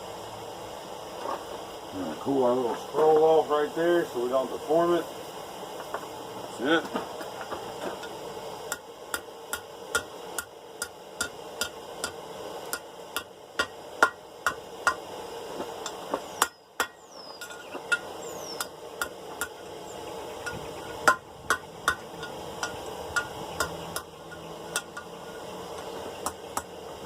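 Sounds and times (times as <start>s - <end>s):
hammer striking steel on anvil: 8.0s - 15.0s, 15.8s - 19.6s, 20.4s - 25.1s, 25.8s - 26.8s.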